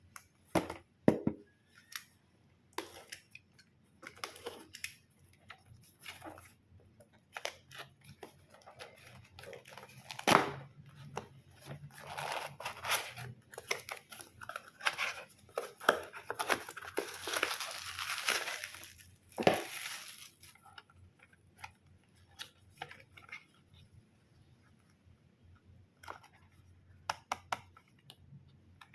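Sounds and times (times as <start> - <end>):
packaging rustling and tearing: 11.6 - 20.7.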